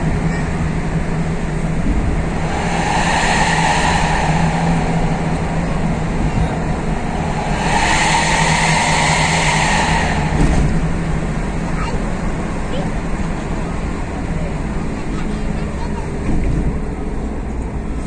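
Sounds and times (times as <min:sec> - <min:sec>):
van engine drone: 0:00.0 - 0:18.0
rushing noise: 0:01.5 - 0:12.6.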